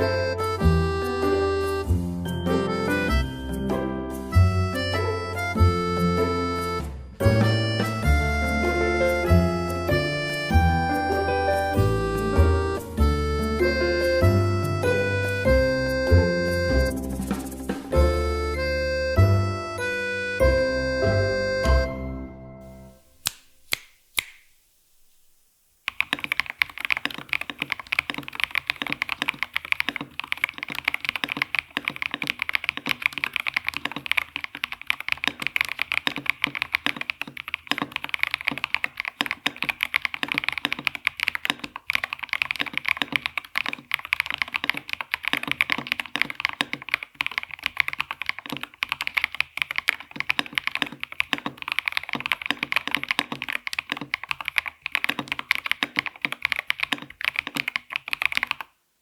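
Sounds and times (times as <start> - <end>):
fast mechanical keyboard typing: 25.9 - 58.8.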